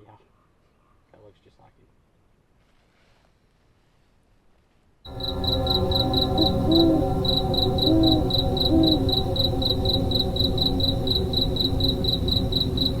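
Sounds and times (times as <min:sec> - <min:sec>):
cricket chirping: 0:05.1 - 0:13.0
low steady rumble: 0:05.1 - 0:13.0
sustained low tones: 0:05.1 - 0:13.0.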